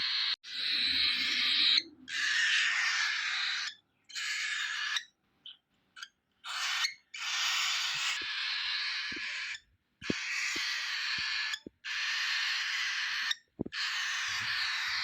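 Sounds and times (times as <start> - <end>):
bird chirps: 0.0 - 15.0
cockatiel raspy begging calls: 6.4 - 15.0.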